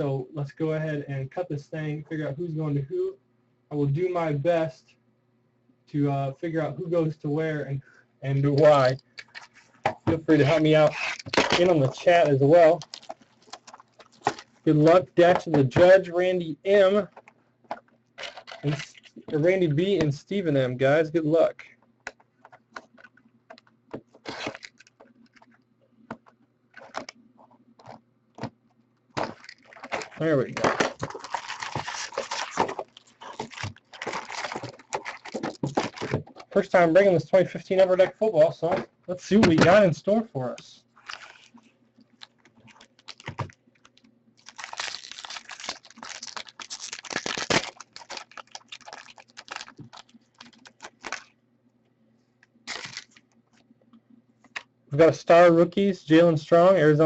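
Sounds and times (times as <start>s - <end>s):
cardboard and wrapper tearing: 10.8s - 14.6s, 24.2s - 25.5s, 29.2s - 36.4s, 41.0s - 41.6s, 42.2s - 51.3s, 52.7s - 53.2s.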